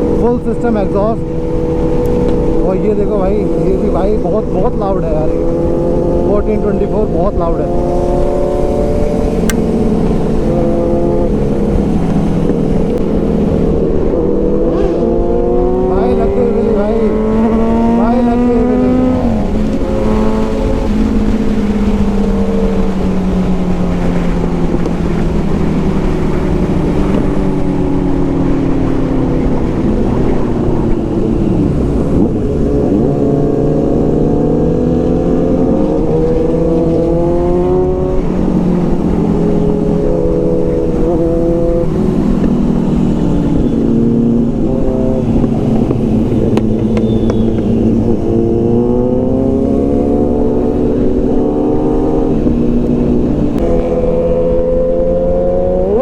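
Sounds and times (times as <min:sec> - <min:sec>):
motorcycle engines revving: 0:00.0 - 0:56.0
wind and road noise rumble: 0:00.0 - 0:56.0.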